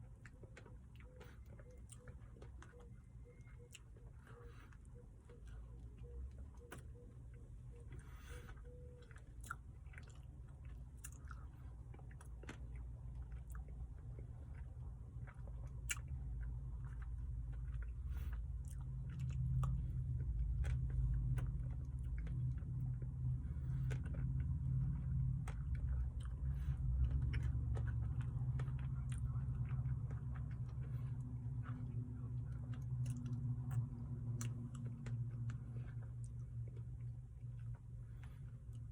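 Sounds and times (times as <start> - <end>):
low rumble: 0.0 - 38.9
person chewing ice cream: 0.0 - 38.9.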